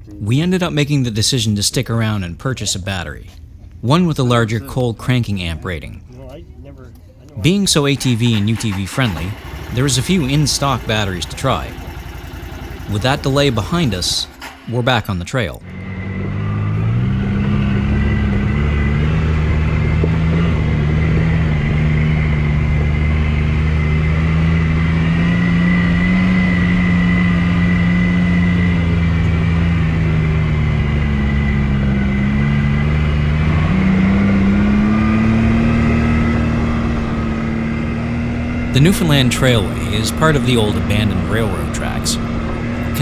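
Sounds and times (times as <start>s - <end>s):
atv engine running: 7.4s - 43.0s.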